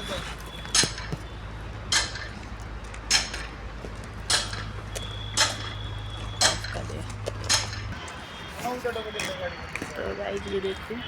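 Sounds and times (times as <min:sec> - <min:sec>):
engine humming: 0:00.0 - 0:11.0
sharp metallic clinks: 0:00.5 - 0:01.3, 0:01.9 - 0:02.4, 0:04.2 - 0:08.0.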